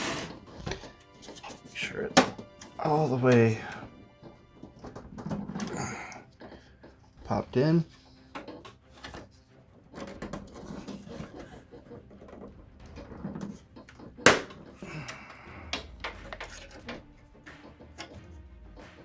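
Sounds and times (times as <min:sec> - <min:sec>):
sheet metal clicks and rattles: 0:09.9 - 0:18.2.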